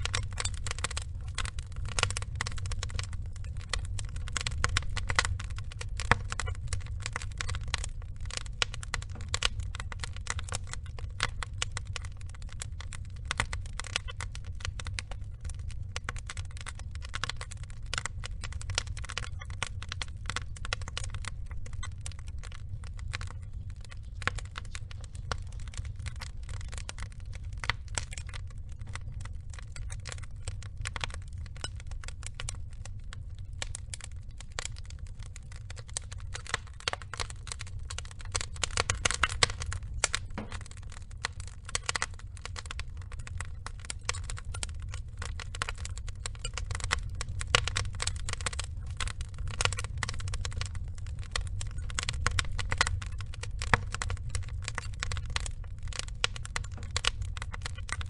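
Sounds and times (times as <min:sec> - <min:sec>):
low rumble of flames: 0:00.0 - 0:58.0
wood fire crackling and popping: 0:00.0 - 0:58.0.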